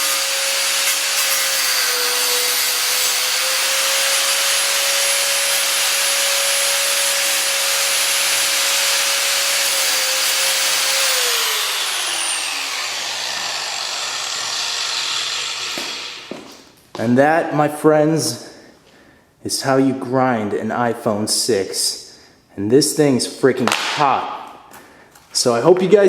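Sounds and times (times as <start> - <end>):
angle grinder whining: 0.0 - 16.6.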